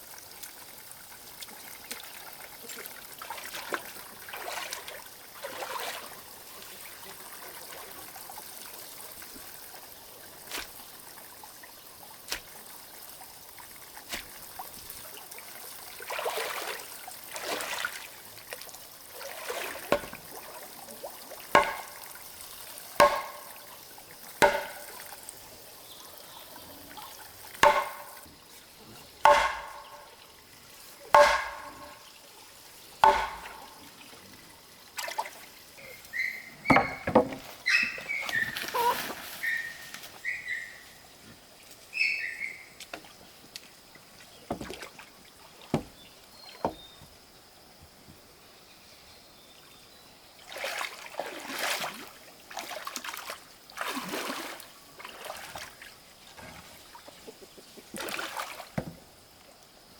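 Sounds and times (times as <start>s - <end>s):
sharp ringing knocks: 21.6s - 22.1s, 23.0s - 23.6s, 24.4s - 25.0s, 27.6s - 28.3s, 29.3s - 30.2s, 31.2s - 32.0s, 33.0s - 33.7s.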